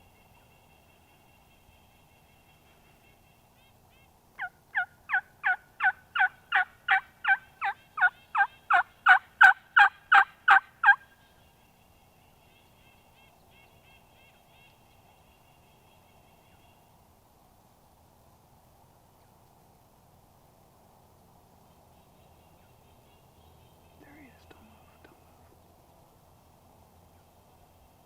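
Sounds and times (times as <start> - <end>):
turkey yelps: 4.4 - 11.0.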